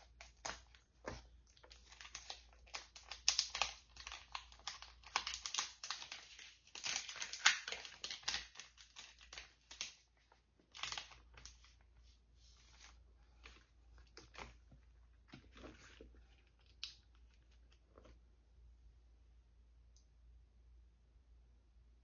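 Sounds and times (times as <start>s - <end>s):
packaging crinkling: 0.0s - 11.8s.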